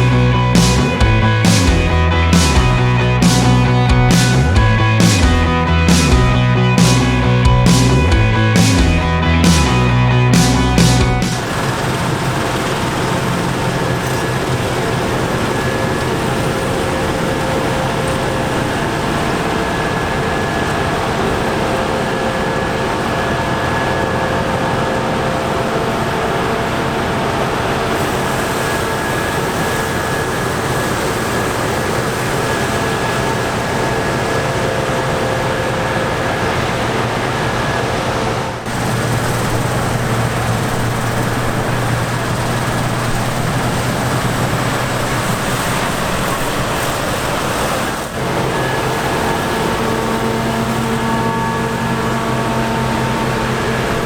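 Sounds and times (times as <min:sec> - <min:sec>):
diesel engine hum: 0:00.0 - 0:54.0
steady machine whine: 0:00.0 - 0:54.0.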